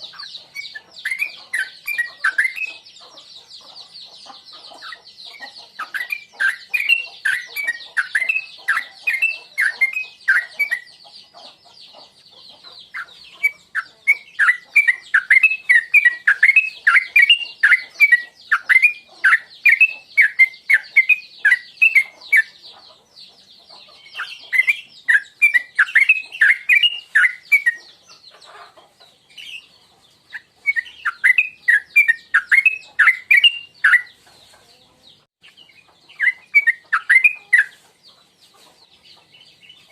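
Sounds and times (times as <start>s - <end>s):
bird singing bubbly song: 0.0s - 2.9s, 5.2s - 11.1s, 12.9s - 22.6s, 24.0s - 28.2s, 30.3s - 34.2s, 35.4s - 37.8s.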